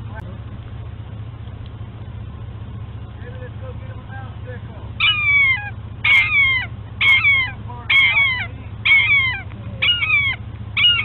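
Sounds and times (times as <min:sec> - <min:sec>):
animal high falling cries: 0:05.0 - 0:11.0.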